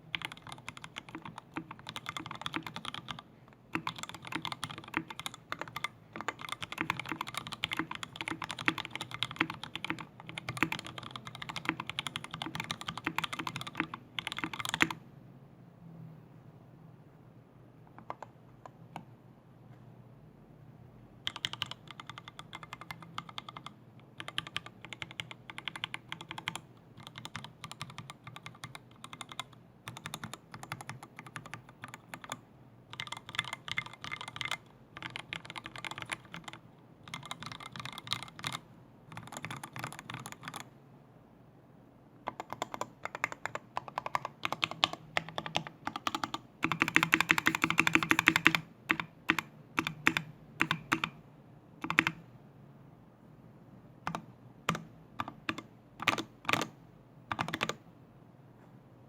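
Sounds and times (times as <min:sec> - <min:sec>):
mechanical keyboard keystrokes: 0:00.1 - 0:15.0, 0:21.3 - 0:40.6, 0:42.3 - 0:51.2, 0:51.8 - 0:52.2, 0:54.1 - 0:57.8.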